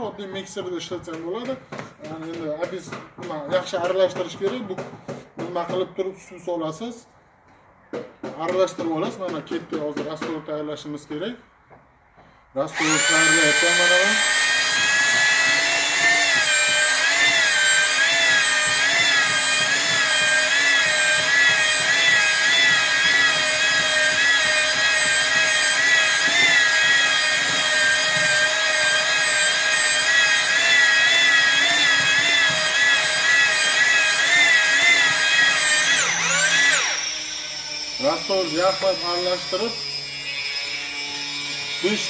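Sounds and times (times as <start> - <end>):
electric drill mixing mortar: 12.7 - 42.0.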